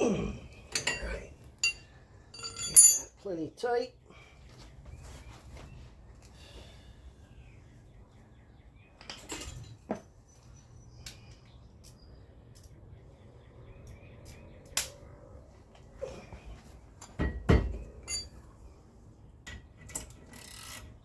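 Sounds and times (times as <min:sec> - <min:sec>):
tools and metal parts clicking: 0:00.7 - 0:03.2, 0:09.0 - 0:09.8, 0:18.0 - 0:18.4, 0:19.4 - 0:21.0.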